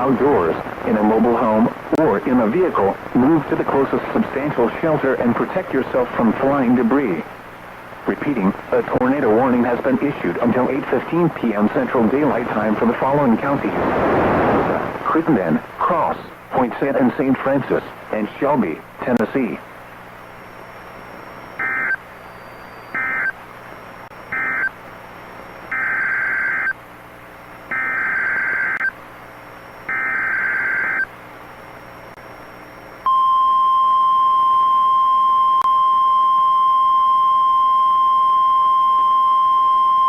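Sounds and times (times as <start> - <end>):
steady warning alarm tone: 21.0 - 23.4, 24.1 - 24.8, 25.7 - 26.8, 27.7 - 28.9, 29.8 - 31.1
warbling data bursts: 21.2 - 23.3.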